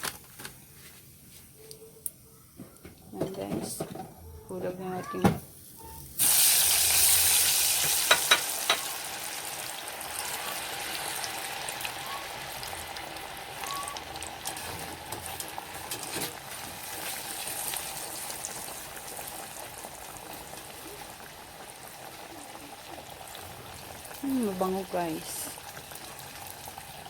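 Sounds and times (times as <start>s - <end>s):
food sizzling in hot oil: 5.4s - 27.0s.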